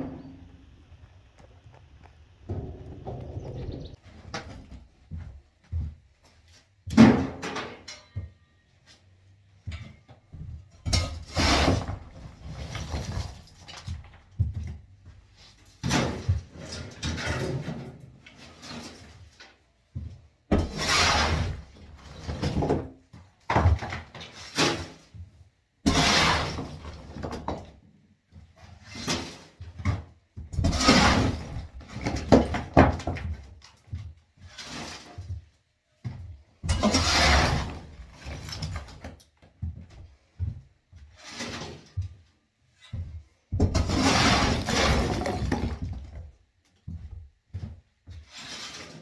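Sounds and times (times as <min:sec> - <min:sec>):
demolition crashes and thuds: 0:10.8 - 0:13.7, 0:43.6 - 0:46.4.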